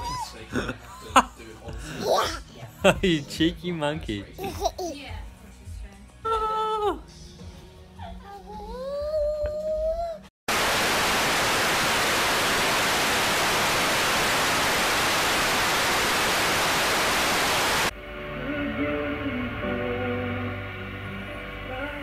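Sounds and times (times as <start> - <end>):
music: 0.0 - 10.3, 17.9 - 22.0
white noise hiss: 10.5 - 17.9.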